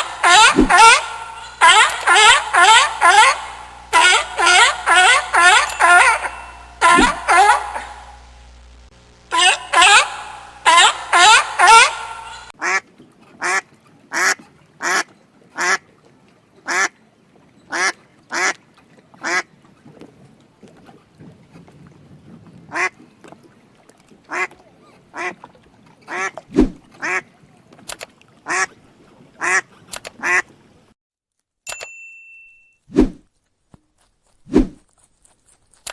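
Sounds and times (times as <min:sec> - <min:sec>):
duck quacking: 0:00.0 - 0:08.2, 0:09.3 - 0:12.8, 0:26.1 - 0:26.4, 0:28.5 - 0:28.7, 0:29.4 - 0:30.5.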